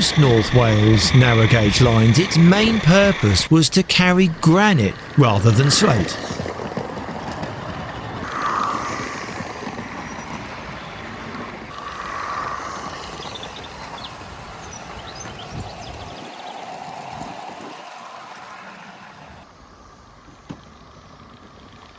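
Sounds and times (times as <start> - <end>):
model steam locomotive hissing: 0.0 - 6.4, 8.3 - 9.8, 15.9 - 20.0.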